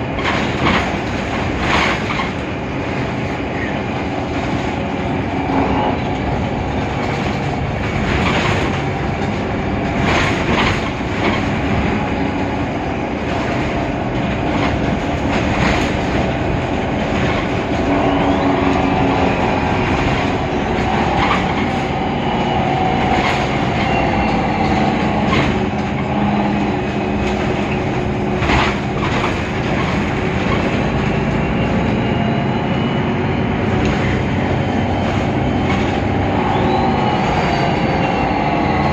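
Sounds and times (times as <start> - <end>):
knocks and rattles: 0.0 - 3.1, 6.1 - 17.9, 23.0 - 31.1
bus diesel engine droning: 0.0 - 38.9
road noise: 0.0 - 38.9.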